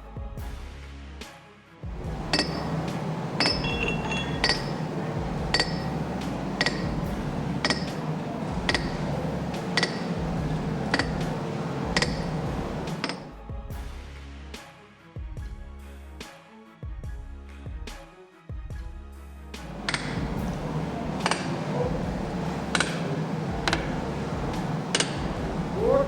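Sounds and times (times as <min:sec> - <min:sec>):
steady low rumble: 0:01.9 - 0:13.5, 0:19.6 - 0:26.0
metal-on-metal clinks: 0:02.0 - 0:13.3, 0:19.7 - 0:26.0.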